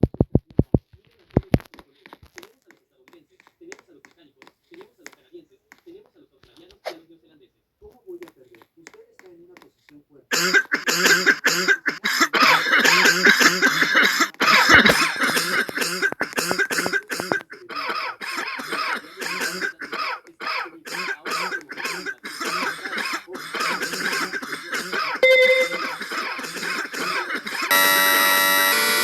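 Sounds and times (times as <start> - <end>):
person coughing: 10.3 - 27.9
brief steady tone: 25.2 - 25.8.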